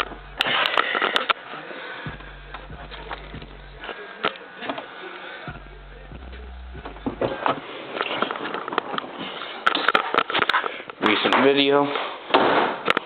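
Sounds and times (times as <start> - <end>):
subwoofer playing deep bass: 0.0 - 0.6, 2.0 - 4.0, 5.5 - 7.7.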